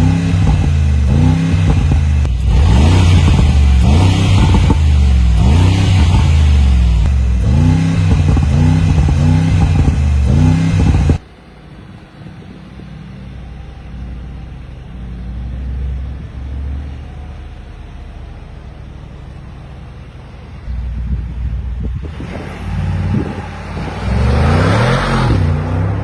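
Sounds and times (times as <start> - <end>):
engine revving: 0.0 - 11.2, 20.4 - 26.0
low engine rumble: 0.0 - 26.0.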